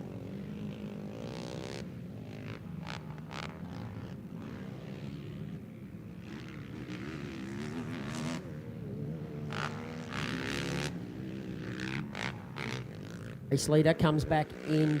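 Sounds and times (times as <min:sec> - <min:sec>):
quad engines revving: 0:06.2 - 0:15.0.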